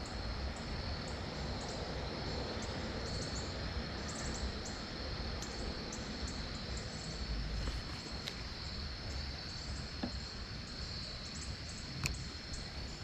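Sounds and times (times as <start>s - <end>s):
insect trill: 0.0s - 13.0s.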